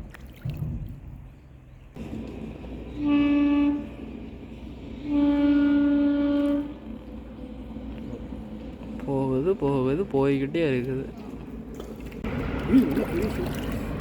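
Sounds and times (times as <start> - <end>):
horn blasts: 2.8 - 7.0.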